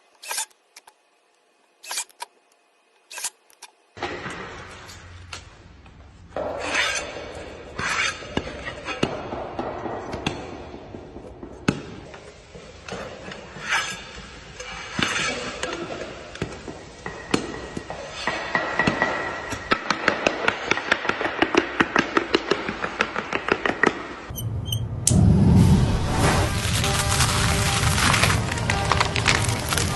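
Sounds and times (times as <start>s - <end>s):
knocks and scraping: 4.0s - 25.2s.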